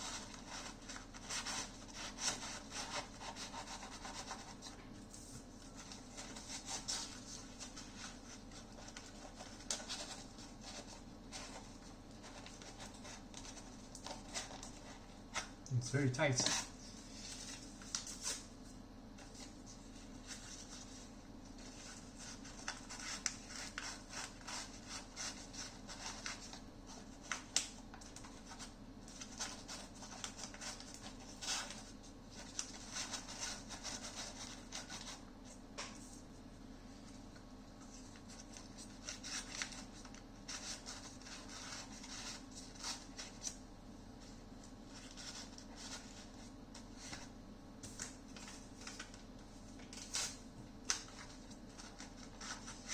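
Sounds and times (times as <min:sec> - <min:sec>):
paper rubbing and scratching: 0:00.0 - 0:04.8, 0:05.8 - 0:15.5, 0:19.2 - 0:35.2, 0:38.0 - 0:43.5.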